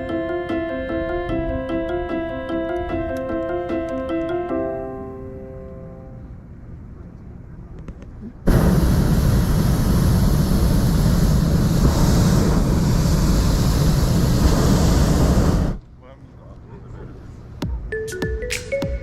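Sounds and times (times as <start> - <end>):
propane burner roaring: 8.4 - 15.8.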